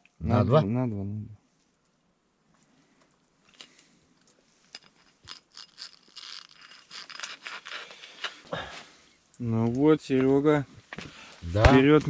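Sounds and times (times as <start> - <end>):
crunching and scraping handling: 3.4 - 8.9.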